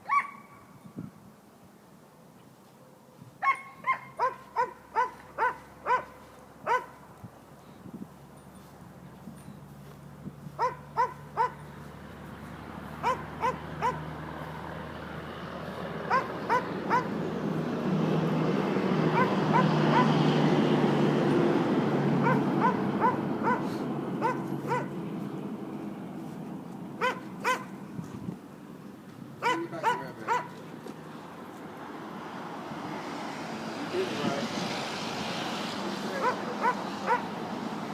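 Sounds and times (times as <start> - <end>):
small dog yapping: 3.4 - 6.9, 10.6 - 11.6, 13.0 - 14.0, 16.1 - 17.1, 19.2 - 20.2, 22.2 - 24.9, 27.0 - 27.7, 29.4 - 30.6, 36.2 - 37.3.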